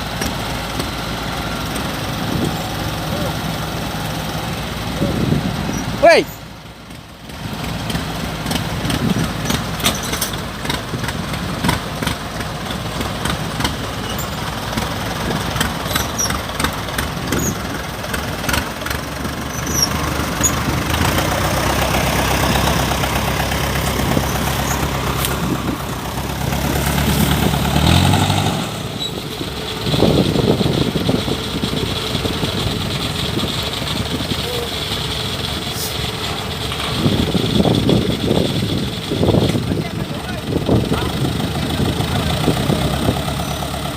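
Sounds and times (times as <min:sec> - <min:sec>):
diesel engine running: 0:00.0 - 0:43.9
sharp clicks and rattles: 0:07.6 - 0:28.0.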